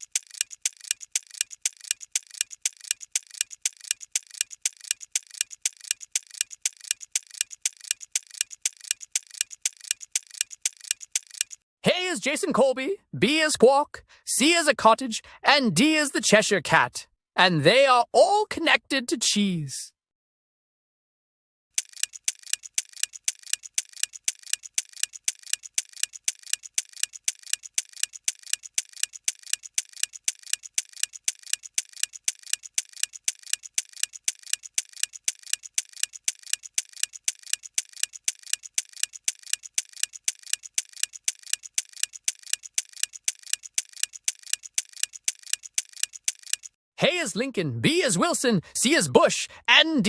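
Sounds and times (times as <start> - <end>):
clock ticking: 0.0 - 11.6, 21.8 - 46.8.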